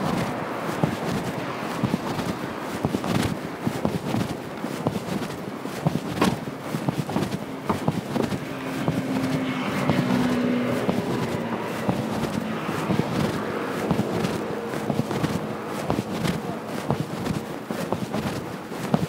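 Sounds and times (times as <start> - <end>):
car passing by: 0.0 - 4.3, 7.3 - 17.4
footsteps on road: 0.0 - 19.0.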